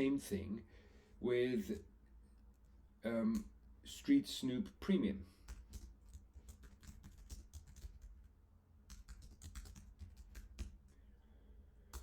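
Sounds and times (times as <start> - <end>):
faint computer keyboard typing: 5.4 - 11.0.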